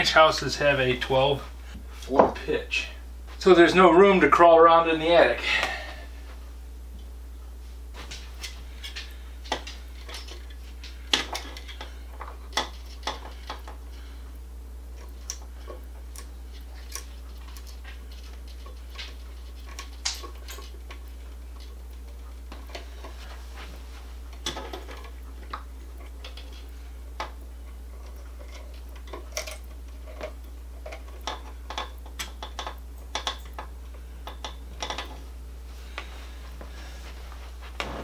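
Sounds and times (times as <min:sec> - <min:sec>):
steady low hum: 0:00.0 - 0:38.0
hand tools clicking and tapping: 0:30.8 - 0:35.1.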